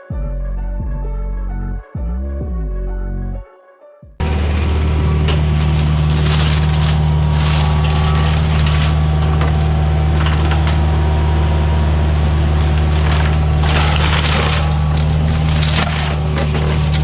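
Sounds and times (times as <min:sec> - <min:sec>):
forestry mulcher droning: 0:04.2 - 0:17.0
wood cracking being shredded: 0:04.2 - 0:17.0.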